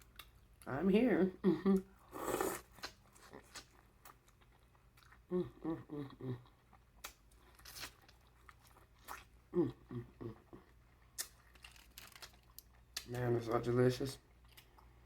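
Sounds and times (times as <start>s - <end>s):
close-miked chewing with crunches: 2.2s - 13.2s.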